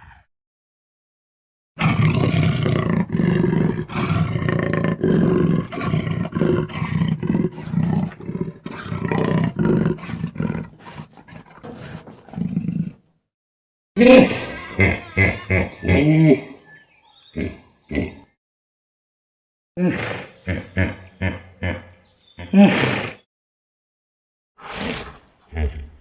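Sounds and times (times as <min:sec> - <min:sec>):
low rough animal roars: 0:01.8 - 0:13.0.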